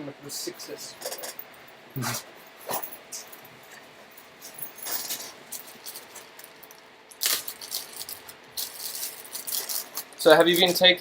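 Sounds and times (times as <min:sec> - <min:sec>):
small metal objects clinking: 0:04.4 - 0:10.8.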